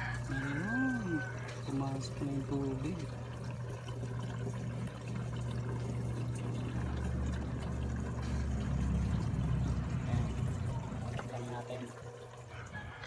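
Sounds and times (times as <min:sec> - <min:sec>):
water pouring into washing machine: 0:00.0 - 0:13.0
steady low hum: 0:02.0 - 0:11.4.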